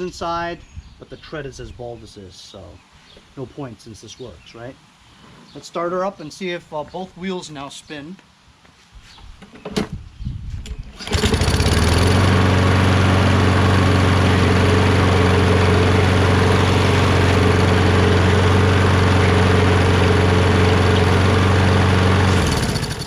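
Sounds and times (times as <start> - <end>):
mower engine starting and running: 10.6 - 23.0.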